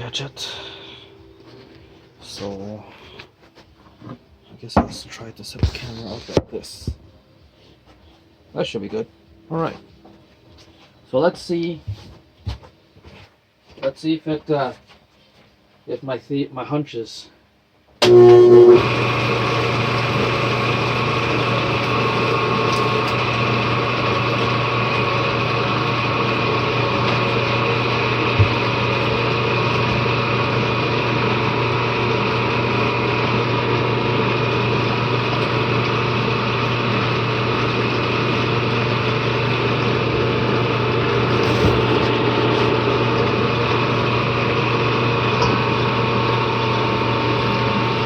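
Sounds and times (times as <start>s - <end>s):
dough sheeter motor humming: 18.0s - 48.0s.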